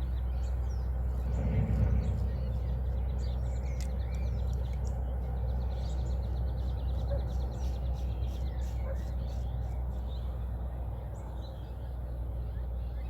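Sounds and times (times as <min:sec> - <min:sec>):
steady low rumble: 0:00.0 - 0:08.6
birds chirping and calling: 0:00.0 - 0:13.0.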